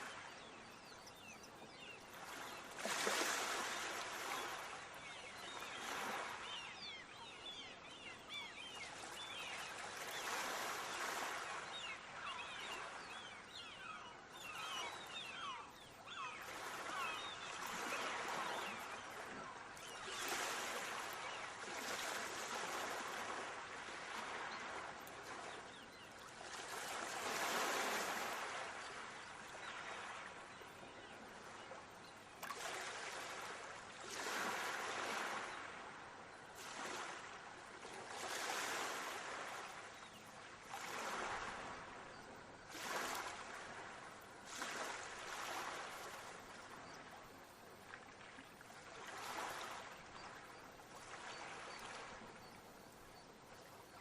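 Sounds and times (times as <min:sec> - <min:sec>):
sea waves washing onto shore: 0:02.1 - 0:06.6, 0:26.5 - 0:30.4.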